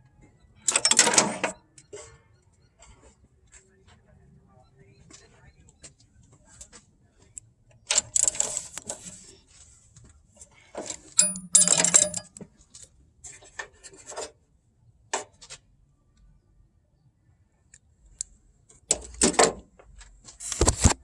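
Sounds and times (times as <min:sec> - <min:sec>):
metal objects clinking and rattling: 0:10.8 - 0:12.4.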